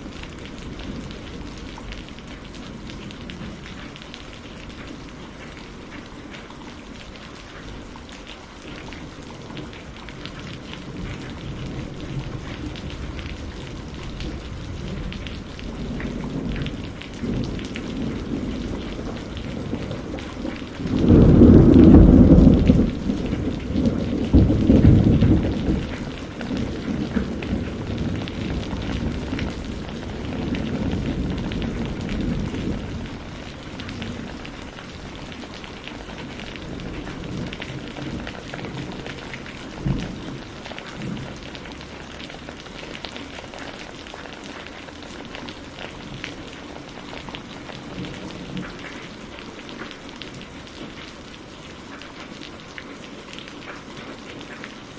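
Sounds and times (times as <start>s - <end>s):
steady rain: 0.0s - 54.9s
thunder rumbling: 9.4s - 44.2s.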